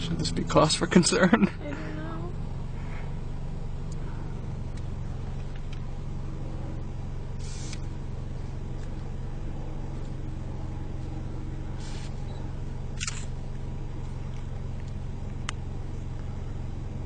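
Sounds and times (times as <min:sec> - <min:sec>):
vehicle engine idling: 0:00.0 - 0:17.0
sharp click: 0:13.0 - 0:13.3.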